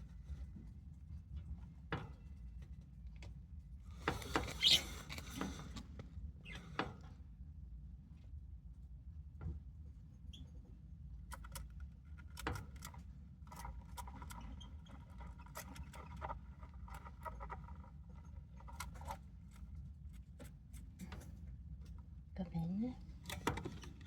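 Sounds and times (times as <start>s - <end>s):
budgerigar clicking and scraping: 11.3s - 21.4s.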